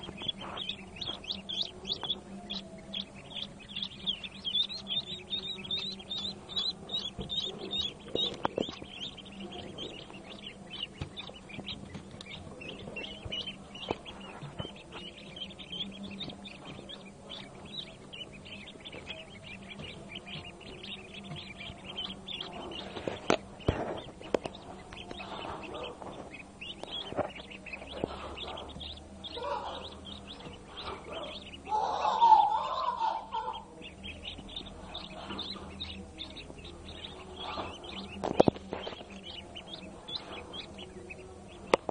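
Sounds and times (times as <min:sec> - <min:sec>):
ducklings peeping: 0:00.0 - 0:41.9.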